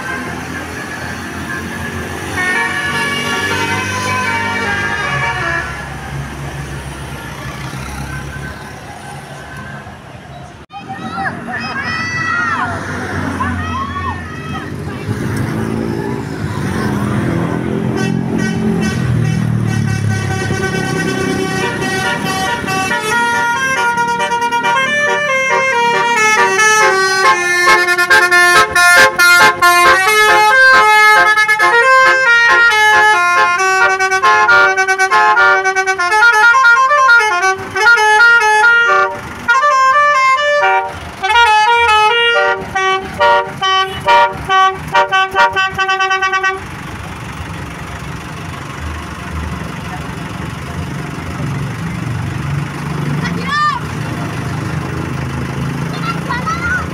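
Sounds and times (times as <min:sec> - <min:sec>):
multi-tone bus horn melody: 0:00.0 - 0:06.4, 0:17.2 - 0:46.8
low engine rumble: 0:40.8 - 0:56.9.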